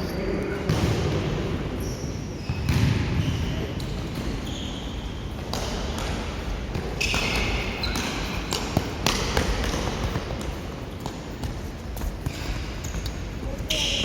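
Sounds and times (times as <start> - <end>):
ball being kicked and bouncing: 2.5 - 3.2
players' footsteps: 5.3 - 14.0.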